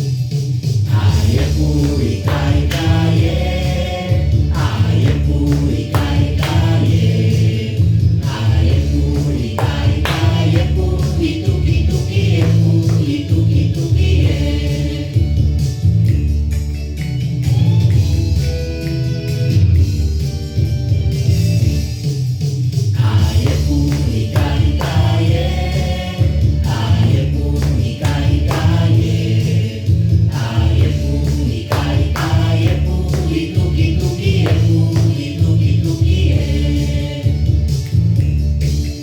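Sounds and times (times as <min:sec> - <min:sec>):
light percussion: 0:00.0 - 0:39.0
bass line: 0:00.6 - 0:22.1, 0:23.0 - 0:39.0
group singing: 0:00.9 - 0:15.6, 0:23.0 - 0:37.8.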